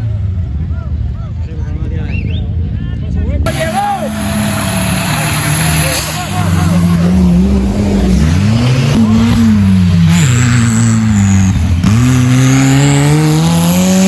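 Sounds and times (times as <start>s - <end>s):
off-road vehicle engines revving: 3.4s - 14.0s.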